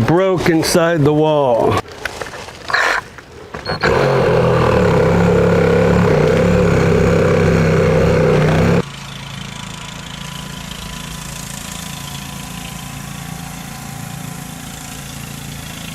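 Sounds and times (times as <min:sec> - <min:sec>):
low hum: 0:03.7 - 0:08.8
motor running: 0:03.7 - 0:15.9.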